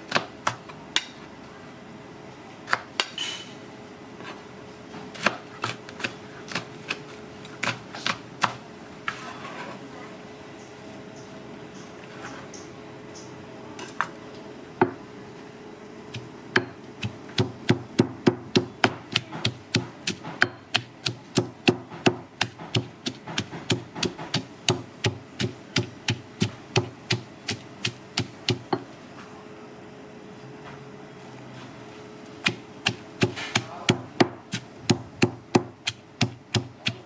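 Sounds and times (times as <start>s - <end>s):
knife chopping on cutting board: 16.2s - 28.8s, 32.4s - 37.0s.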